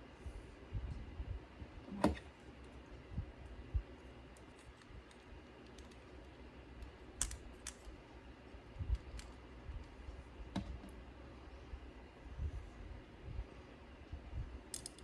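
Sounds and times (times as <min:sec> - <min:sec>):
faint low hum: 0:00.0 - 0:15.0
small parts and tools clicking: 0:04.0 - 0:08.0, 0:08.8 - 0:10.0, 0:14.7 - 0:15.0.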